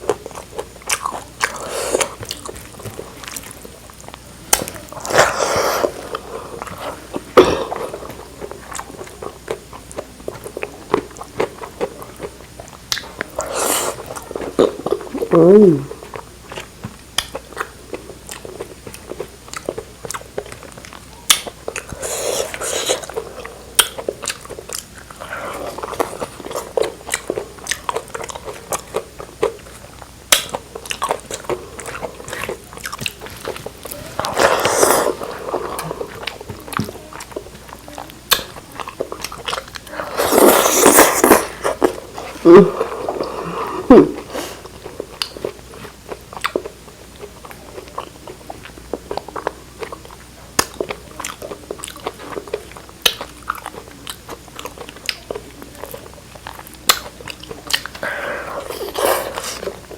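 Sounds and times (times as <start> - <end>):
chewing and biting: 0.0 - 15.3, 15.9 - 59.9
wet mouth clicks: 38.3 - 38.6.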